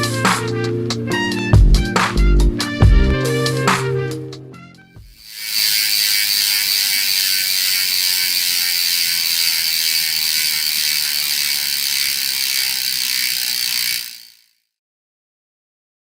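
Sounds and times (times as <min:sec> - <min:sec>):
bike freewheel hub buzzing: 0:05.1 - 0:14.6.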